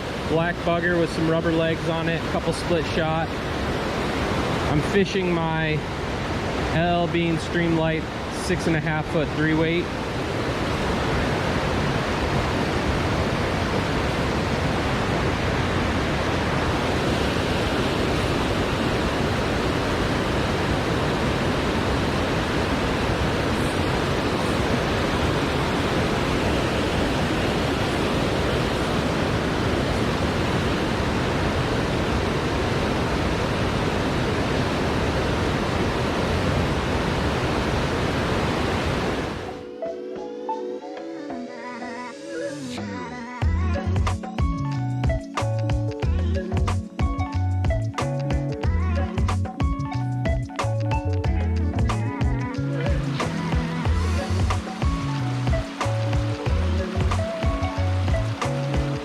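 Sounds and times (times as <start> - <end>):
water rushing down waterfall: 0.0 - 39.6, 52.9 - 59.0.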